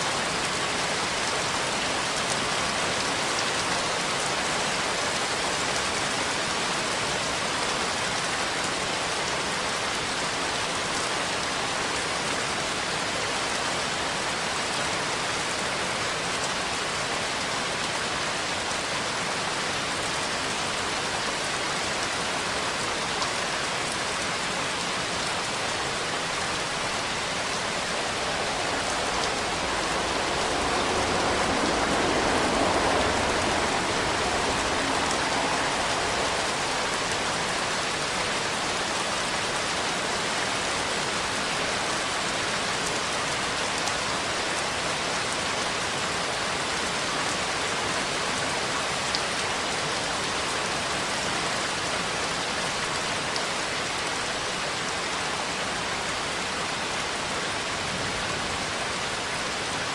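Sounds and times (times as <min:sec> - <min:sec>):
heavy rain hissing: 0:00.0 - 0:59.9.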